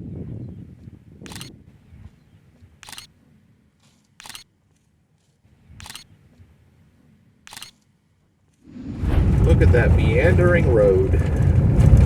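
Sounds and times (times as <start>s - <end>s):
low rumble of wind: 0.0s - 3.8s, 4.9s - 12.0s
camera shutter clicks: 1.3s - 1.5s, 2.8s - 3.1s, 4.2s - 4.5s, 5.8s - 6.1s, 7.5s - 7.9s.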